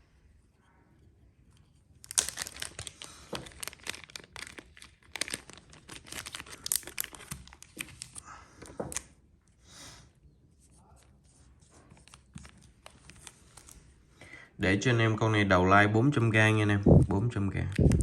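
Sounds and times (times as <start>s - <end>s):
packaging crinkling: 2.0s - 9.2s, 11.9s - 14.0s.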